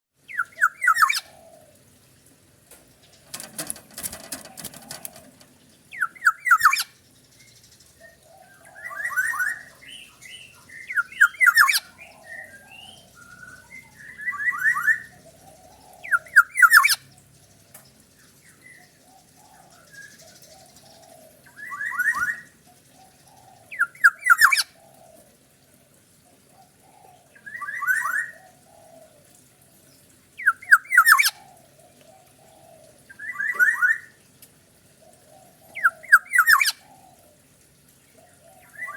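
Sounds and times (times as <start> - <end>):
oriole calling: 0.3 - 1.8, 5.9 - 7.0, 23.3 - 25.2, 35.0 - 37.4.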